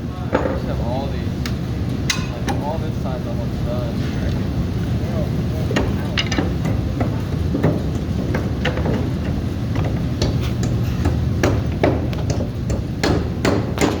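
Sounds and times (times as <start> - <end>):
sharp knocks and taps: 5.7 - 14.0.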